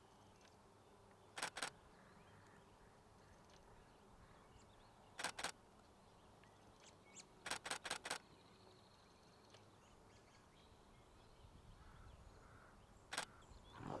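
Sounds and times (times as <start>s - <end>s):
camera shutter firing: 1.4s - 1.7s, 5.2s - 5.6s, 7.5s - 8.2s.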